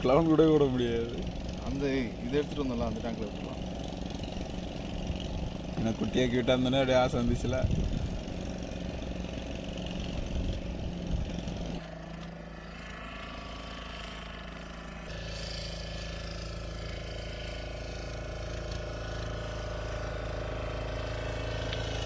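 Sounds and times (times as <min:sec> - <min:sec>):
motor drone: 0:00.0 - 0:22.0.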